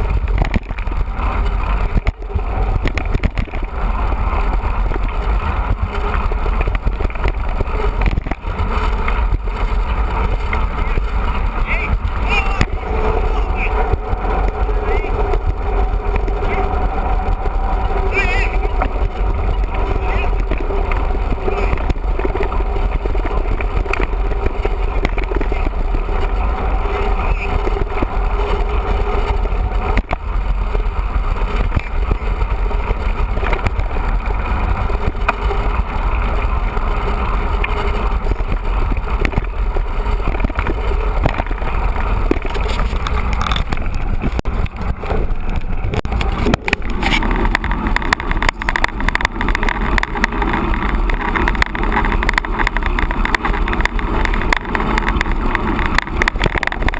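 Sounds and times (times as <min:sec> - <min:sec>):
bike rattles and knocks: 0:00.0 - 0:56.9
bike tyres rushing: 0:00.0 - 0:56.9
wind rumbling on microphone: 0:00.0 - 0:56.9.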